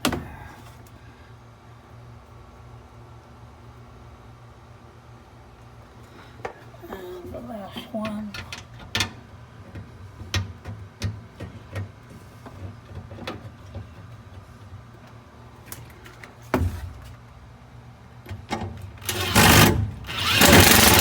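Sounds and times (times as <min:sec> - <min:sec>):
power driver running: 0:19.0 - 0:21.0.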